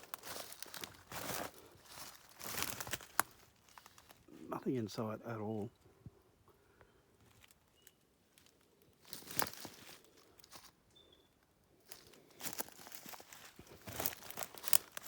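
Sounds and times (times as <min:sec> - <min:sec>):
footsteps crunching on dry leaves: 0:00.0 - 0:04.4, 0:09.0 - 0:10.8, 0:11.8 - 0:15.0
faint bird chirps: 0:06.7 - 0:08.1, 0:10.8 - 0:11.4.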